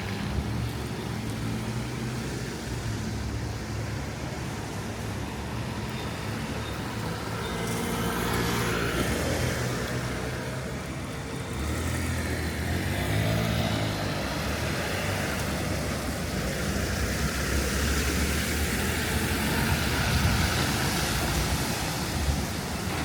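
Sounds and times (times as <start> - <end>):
vehicle engines running: 0.0 - 23.0.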